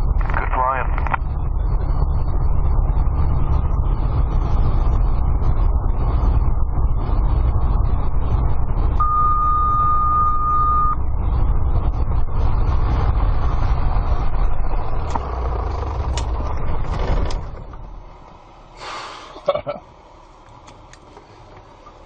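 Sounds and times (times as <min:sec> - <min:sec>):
light aircraft engine and cabin noise: 0:00.2 - 0:01.2, 0:15.0 - 0:22.0
high steady beep: 0:09.0 - 0:11.0.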